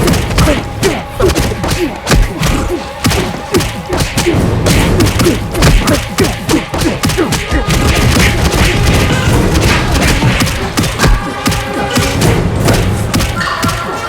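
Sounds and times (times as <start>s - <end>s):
heavy thuds and impacts: 0.0s - 14.0s.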